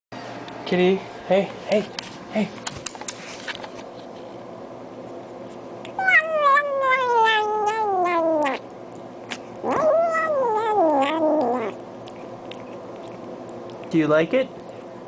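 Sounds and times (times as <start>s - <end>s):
cat yowling: 6.0s - 8.6s, 9.6s - 11.8s.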